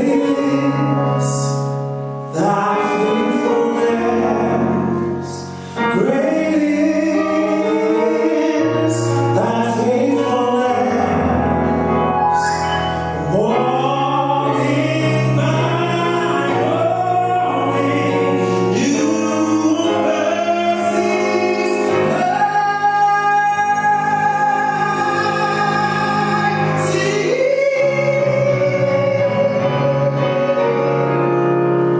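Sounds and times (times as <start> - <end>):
gospel choir singing: 2.3 - 31.9.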